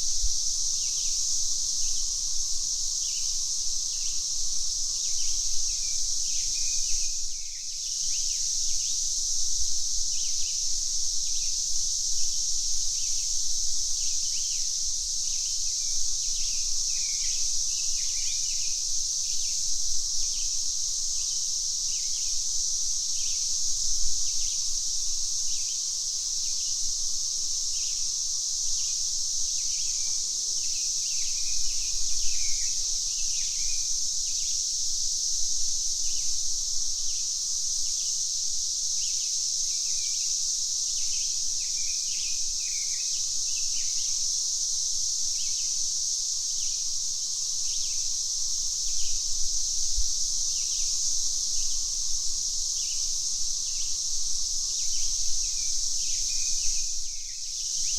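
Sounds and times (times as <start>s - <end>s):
cicadas buzzing: 0.0s - 57.9s.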